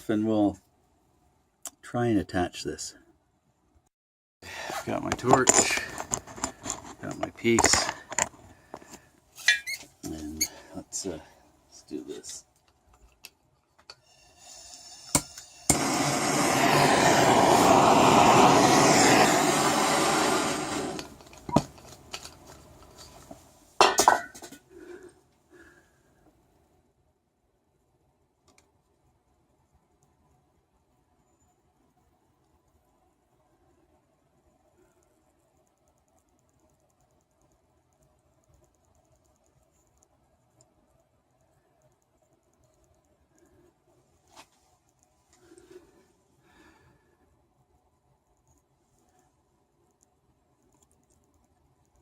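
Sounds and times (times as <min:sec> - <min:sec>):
gas torch hissing: 0:14.0 - 0:21.7.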